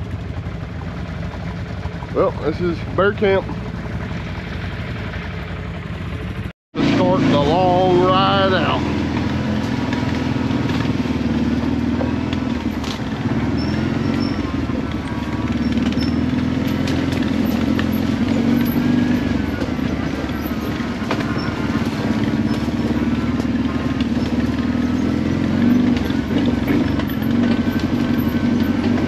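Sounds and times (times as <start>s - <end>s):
atv engine running: 0.0s - 29.0s.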